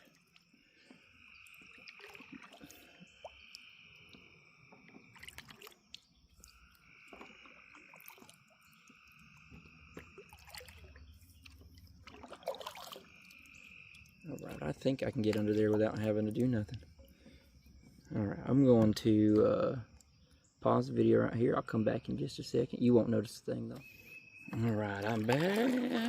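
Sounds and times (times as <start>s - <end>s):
frogs calling: 0.0s - 26.0s
water dripping and clicks: 1.3s - 17.2s.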